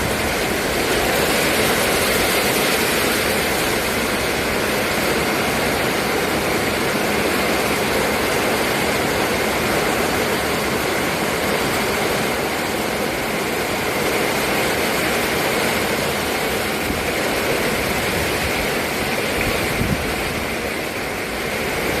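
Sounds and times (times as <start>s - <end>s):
wind gusts buffeting microphone: 0.0s - 22.0s
storm wind rushing: 16.2s - 20.8s.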